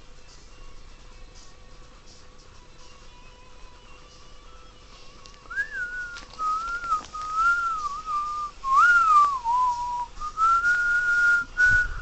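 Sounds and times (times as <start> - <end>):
person whistling a tune: 5.5 - 12.0.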